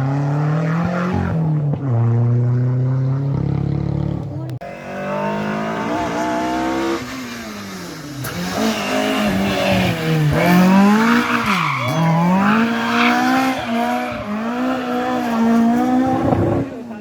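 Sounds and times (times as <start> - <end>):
rally car engine at high revs: 0.0 - 17.0
tyres squealing on tarmac: 10.8 - 15.5.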